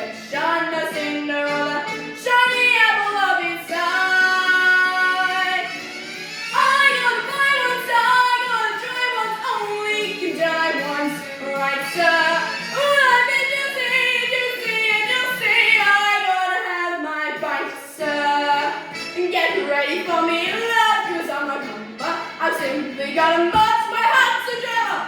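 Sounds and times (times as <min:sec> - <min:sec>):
girl singing a show tune: 0:00.0 - 0:05.7, 0:06.5 - 0:25.0.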